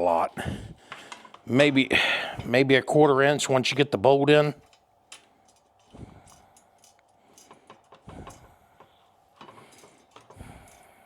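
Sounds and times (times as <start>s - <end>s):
faint metallic clicks and knocks: 0.9s - 1.5s, 4.6s - 10.9s.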